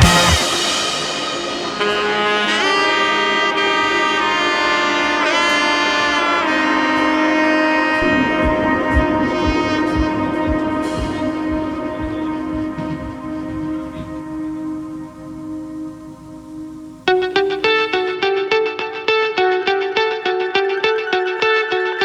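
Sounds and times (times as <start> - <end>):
low beat: 0.0 - 2.7, 8.0 - 18.3
saxophone melody over chords: 0.0 - 22.0.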